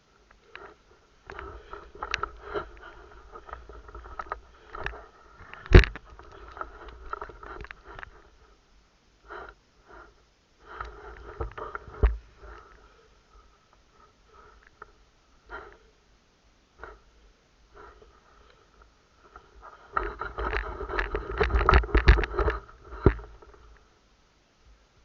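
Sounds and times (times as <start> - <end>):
rustling: 0.0 - 8.7, 16.8 - 24.0
breathing close to microphone: 0.2 - 8.6, 9.2 - 16.1, 16.8 - 23.9.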